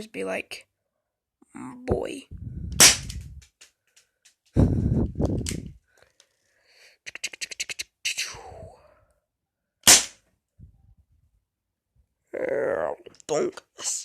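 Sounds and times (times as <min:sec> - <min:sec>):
bb gun firing crack: 0:02.8 - 0:03.3, 0:09.8 - 0:10.2.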